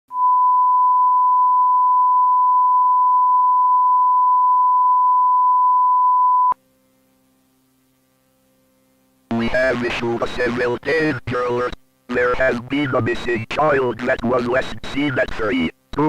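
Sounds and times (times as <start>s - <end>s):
steady electronic beep: 0.1s - 6.6s
faint low hum: 0.6s - 16.0s.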